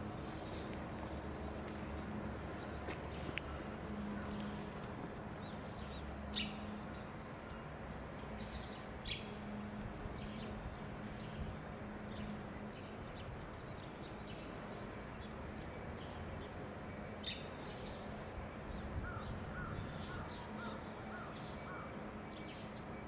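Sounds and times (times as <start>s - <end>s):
birds chirping: 0.0s - 6.6s
steady background hum: 0.0s - 23.0s.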